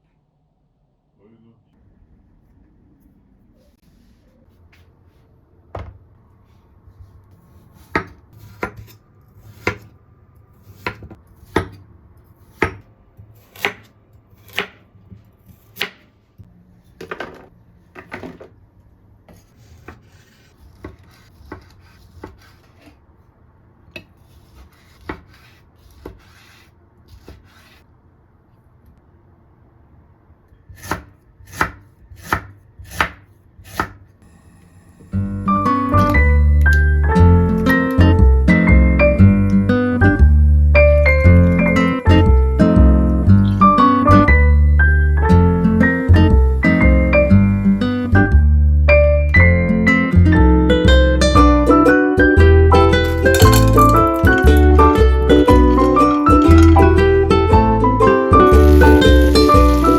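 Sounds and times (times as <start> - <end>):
knife chopping on cutting board: 7.7 - 9.9, 10.6 - 11.8, 12.4 - 14.8, 15.4 - 16.1, 19.3 - 23.0, 30.7 - 34.0.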